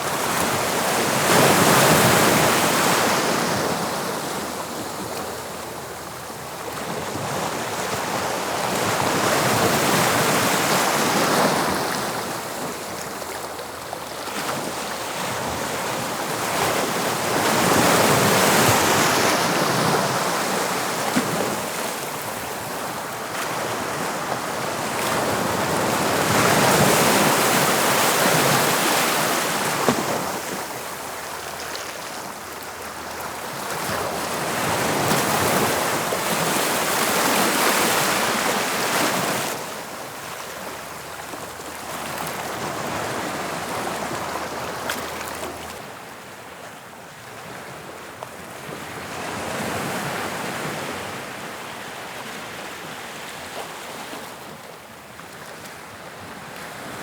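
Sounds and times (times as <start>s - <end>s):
waves breaking on shore: 14.3s - 46.3s.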